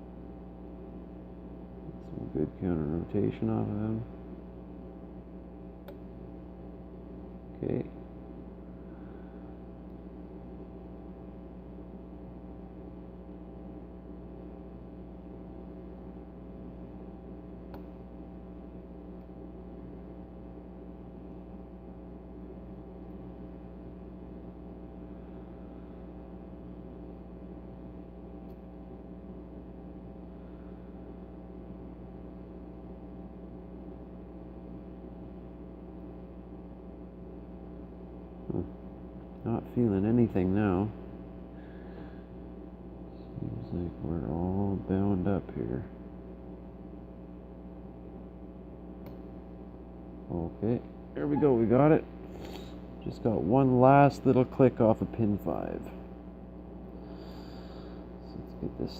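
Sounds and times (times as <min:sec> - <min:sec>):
steady background hum: 0:00.0 - 0:58.9.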